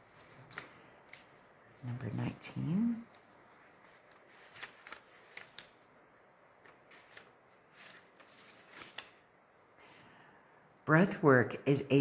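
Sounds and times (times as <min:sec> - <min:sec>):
cards clicking and rustling: 0:00.1 - 0:01.6, 0:03.8 - 0:05.8, 0:06.6 - 0:09.2.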